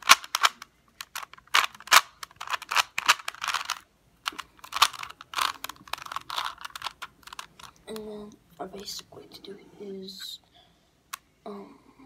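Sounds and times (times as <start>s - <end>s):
puzzle cube twisting clicks: 0.0s - 8.1s.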